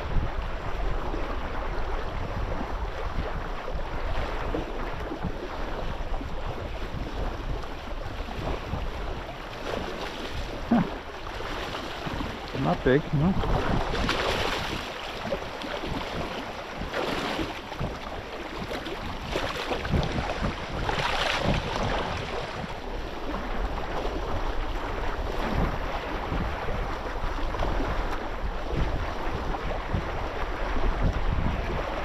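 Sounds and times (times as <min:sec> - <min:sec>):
wind buffeting microphone: 0:00.0 - 0:32.0
water washing: 0:07.5 - 0:23.7.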